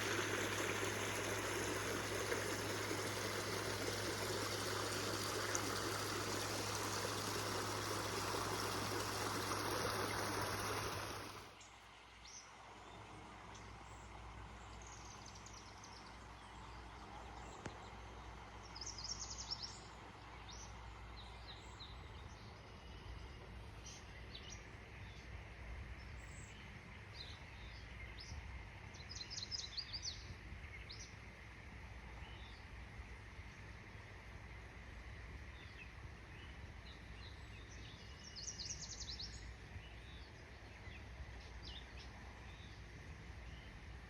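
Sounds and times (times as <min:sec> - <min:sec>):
rush of water from waterfall: 0:00.0 - 0:11.5.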